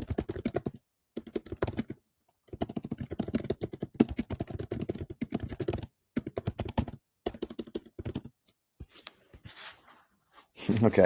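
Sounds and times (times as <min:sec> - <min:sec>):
rapid keyboard typing: 0:00.0 - 0:08.4.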